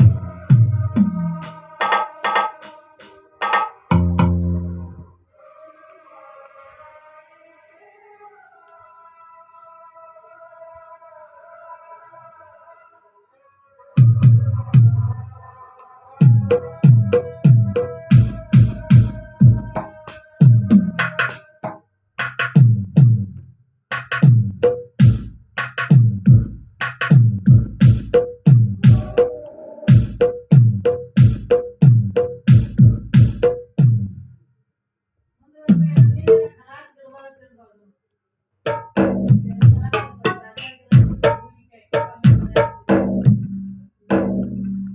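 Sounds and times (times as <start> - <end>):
electronic drum beat: 16.2 - 23.2, 23.9 - 34.0, 35.7 - 36.5, 38.7 - 41.4, 42.0 - 43.4.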